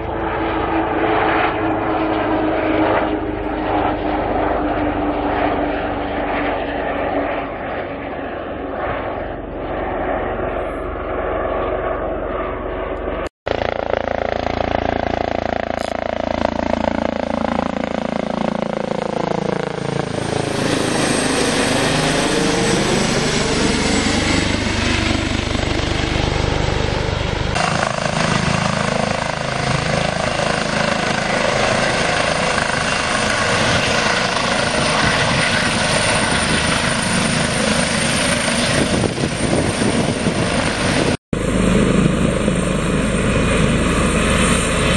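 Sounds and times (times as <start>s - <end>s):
helicopter flying by: 0.0s - 44.9s.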